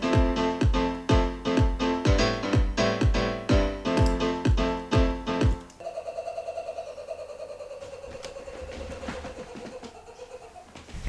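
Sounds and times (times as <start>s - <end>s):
electric piano chords: 0.0s - 5.8s.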